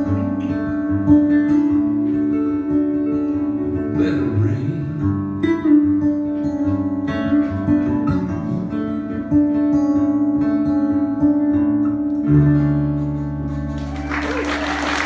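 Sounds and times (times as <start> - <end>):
acoustic guitar playing: 0.0 - 14.0.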